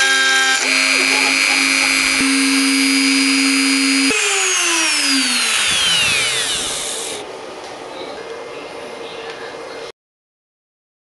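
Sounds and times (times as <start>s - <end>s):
router spindle whine spinning down: 0.0s - 7.2s.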